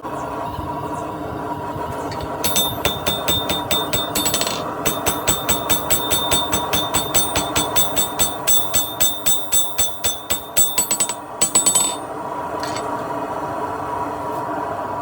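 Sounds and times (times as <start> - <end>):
steady hum: 0.0 - 15.0
hammer striking steel on anvil: 2.1 - 12.9.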